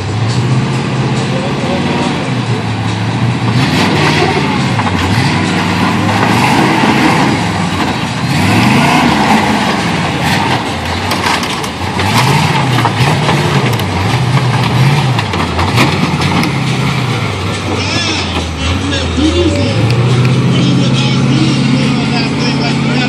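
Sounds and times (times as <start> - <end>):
truck engine revving: 0.0 - 23.0
sharp clicks and knocks: 9.3 - 18.6.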